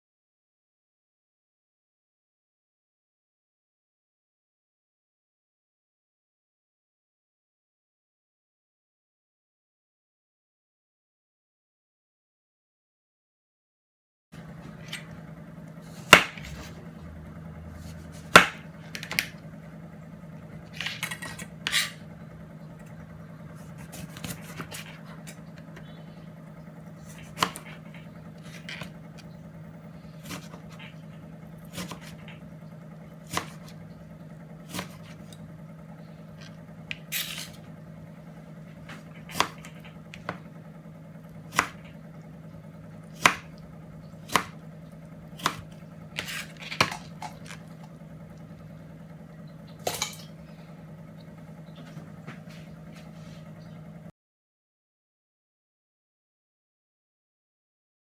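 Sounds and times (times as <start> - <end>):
knife cutting on chopping board: 15.9 - 16.8, 17.8 - 19.3, 23.6 - 25.4, 27.0 - 29.0, 30.2 - 30.8, 31.7 - 32.3, 33.3 - 33.8, 34.7 - 35.3, 36.9 - 37.6, 38.9 - 40.4, 41.5 - 41.9, 43.1 - 43.5, 44.2 - 44.6, 45.3 - 47.6.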